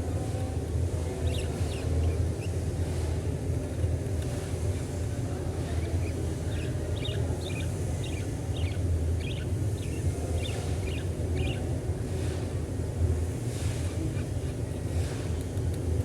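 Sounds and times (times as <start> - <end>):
budgerigars chirping softly: 5.6 - 12.4.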